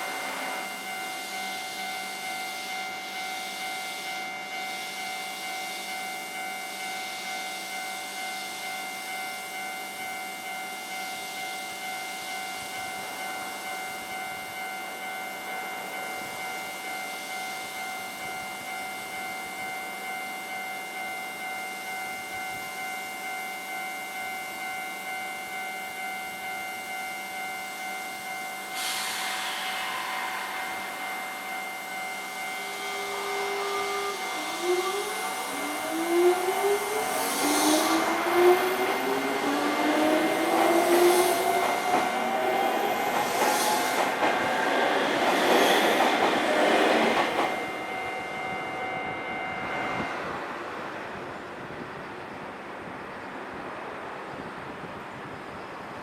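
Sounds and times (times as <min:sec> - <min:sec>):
electric train motors whining: 0:00.0 - 0:08.6, 0:27.7 - 0:51.4
hiss: 0:28.6 - 0:47.8
level crossing alarm dinging: 0:29.8 - 0:51.0.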